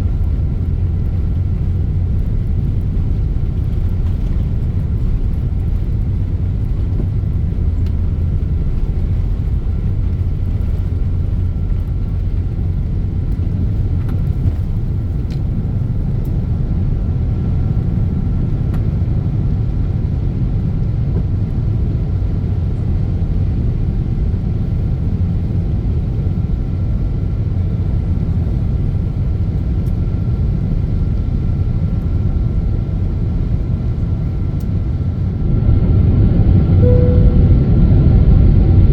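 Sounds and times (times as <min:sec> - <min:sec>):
airplane engines rumbling: 0:00.0 - 0:38.9
faint high tone: 0:36.8 - 0:37.8.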